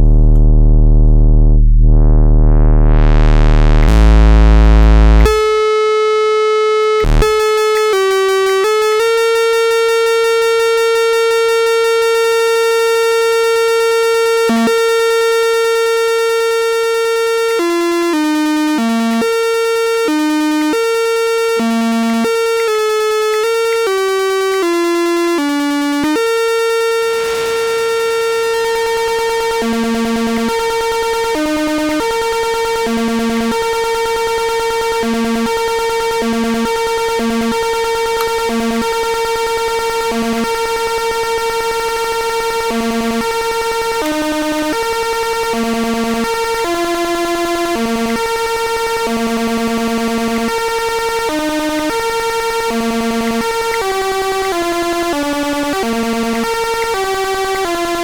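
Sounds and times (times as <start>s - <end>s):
loud low sound: 0.0s - 5.6s
synthesizer notes: 0.0s - 58.0s
synthesizer noise hiss: 26.1s - 33.6s.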